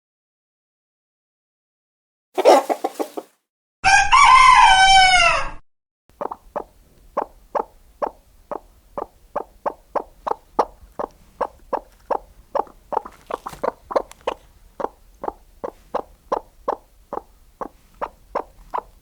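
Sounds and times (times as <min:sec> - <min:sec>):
short clucks: 0:02.4 - 0:03.3, 0:06.2 - 0:19.0
rooster crowing: 0:03.8 - 0:05.6.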